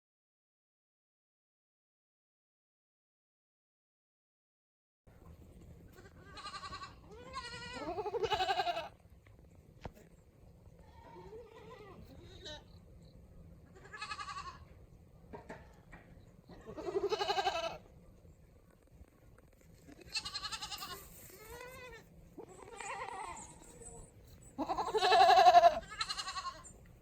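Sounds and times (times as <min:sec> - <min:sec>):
goats bleating: 0:05.9 - 0:09.0, 0:10.8 - 0:12.6, 0:13.8 - 0:14.6, 0:16.5 - 0:17.8, 0:19.9 - 0:23.8, 0:24.6 - 0:26.7.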